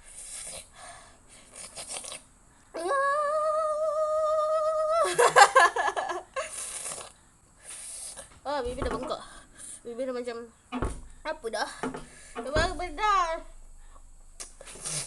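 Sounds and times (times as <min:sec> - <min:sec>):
hissing breaths: 0:00.0 - 0:02.8, 0:06.3 - 0:08.4, 0:13.7 - 0:15.0.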